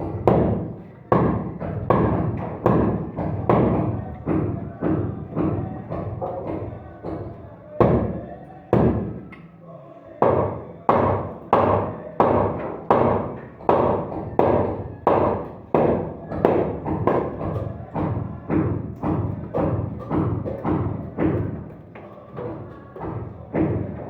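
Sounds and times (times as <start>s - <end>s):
hammer striking wood: 0.0s - 5.6s, 10.2s - 21.5s.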